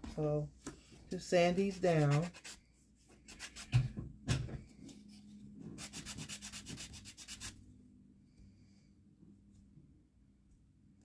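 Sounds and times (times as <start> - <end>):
hand-sanding resin: 1.6 - 2.6, 5.8 - 7.6.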